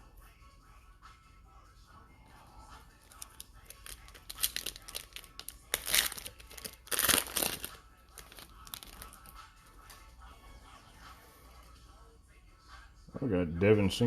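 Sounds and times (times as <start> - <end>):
cards rustling: 3.1 - 9.3
foil wrapper crinkling and tearing: 3.1 - 9.3.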